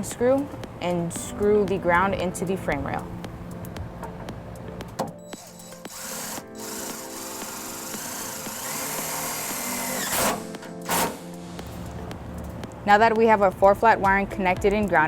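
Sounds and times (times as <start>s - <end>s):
power drill driving screw into metal: 5.3s - 11.3s.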